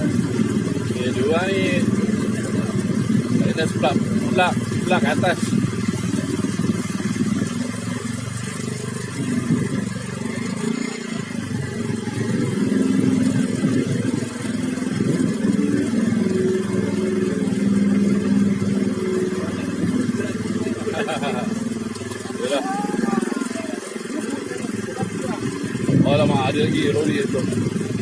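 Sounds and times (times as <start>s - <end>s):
vehicle engine running: 0.0s - 28.0s.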